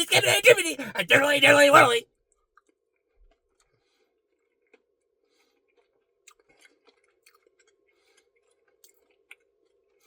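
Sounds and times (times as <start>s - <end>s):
chewing ice cream: 5.6s - 10.0s.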